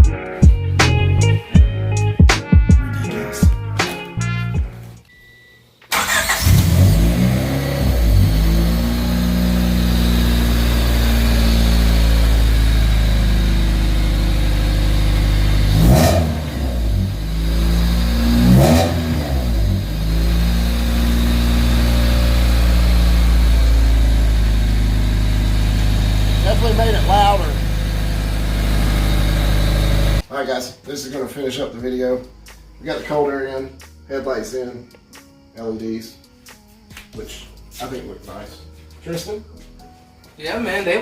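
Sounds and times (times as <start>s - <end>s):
car engine starting and idling: 5.1s - 30.2s
engine revving: 5.9s - 30.2s.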